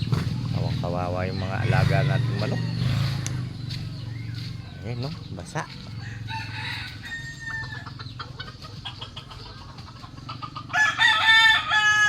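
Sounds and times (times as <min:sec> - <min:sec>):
chickens calling: 0:00.0 - 0:12.0
rooster crowing loudly: 0:06.0 - 0:07.9, 0:10.7 - 0:12.0.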